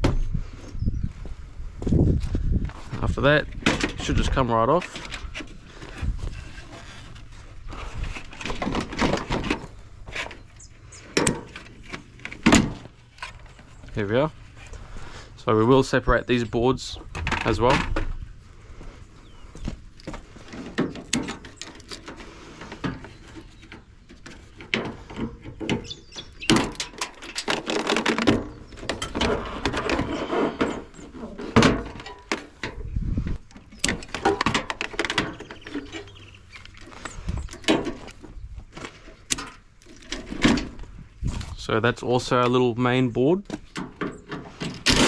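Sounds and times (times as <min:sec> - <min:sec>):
plastic panel knocking and clattering: 0:08.4 - 0:09.6, 0:33.8 - 0:35.6.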